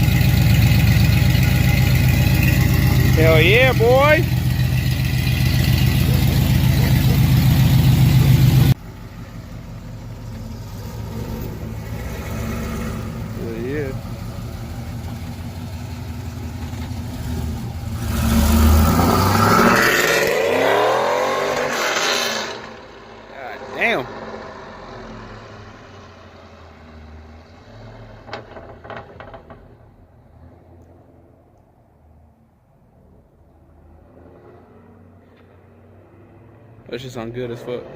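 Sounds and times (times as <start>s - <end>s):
low exhaust rumble: 0.0s - 12.2s
car engine running loud: 0.0s - 23.0s.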